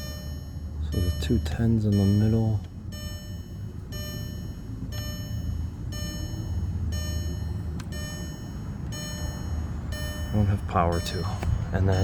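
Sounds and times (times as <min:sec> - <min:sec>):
dashboard warning chime: 0:00.0 - 0:12.0
low steady hum: 0:00.0 - 0:12.0.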